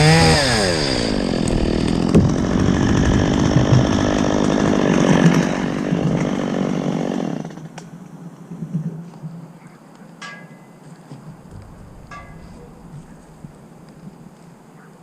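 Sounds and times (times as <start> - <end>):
chainsaw running: 0.0 - 7.7.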